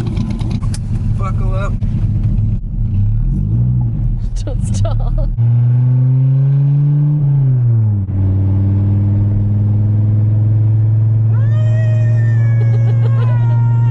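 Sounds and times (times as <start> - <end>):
car engine idling: 0.0 - 3.1, 11.0 - 13.9.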